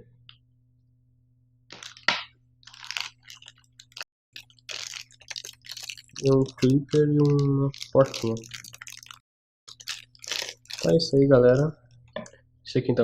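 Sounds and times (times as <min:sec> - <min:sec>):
packaging crinkling and rustling: 0:01.7 - 0:11.7.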